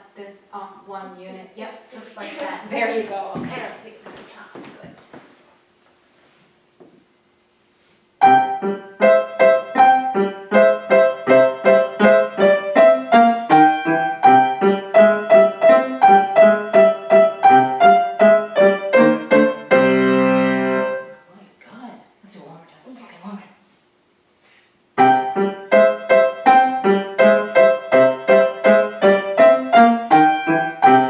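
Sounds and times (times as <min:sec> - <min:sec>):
piano detached notes: 0:08.2 - 0:21.2, 0:25.0 - 0:31.0.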